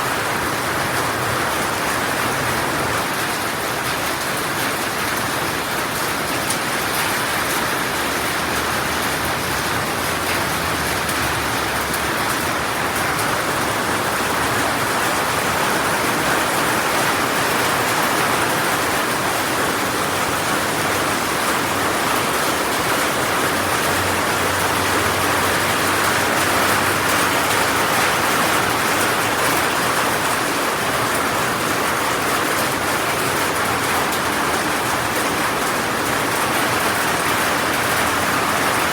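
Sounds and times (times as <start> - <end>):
heavy rain falling: 0.0 - 38.9.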